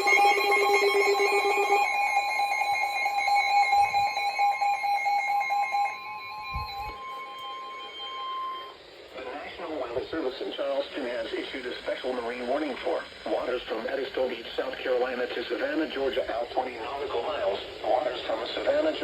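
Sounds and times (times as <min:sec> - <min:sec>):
alarm beeping in several pitches: 0:00.0 - 0:09.0
steady alarm tone: 0:00.0 - 0:19.0.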